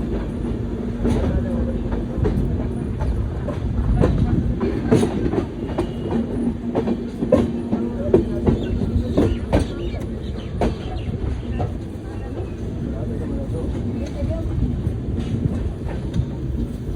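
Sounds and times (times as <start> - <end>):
wheels clacking over rail joints: 0.0 - 12.8
train rumbling: 0.0 - 16.9.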